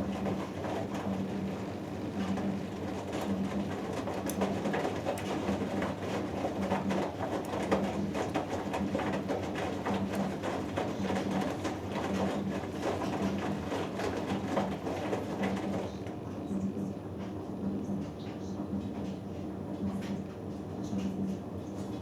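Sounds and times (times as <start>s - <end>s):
water swishing in washing machine: 0.0s - 16.7s
washing machine motor hum: 0.0s - 17.2s.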